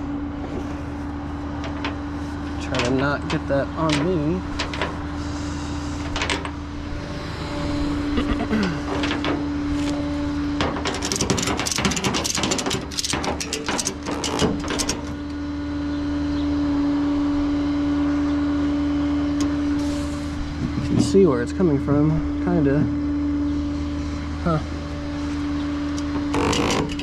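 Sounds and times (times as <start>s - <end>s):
clicks and rattles: 1.6s - 2.0s, 2.6s - 5.0s, 8.9s - 9.4s, 10.6s - 15.4s, 26.4s - 27.0s.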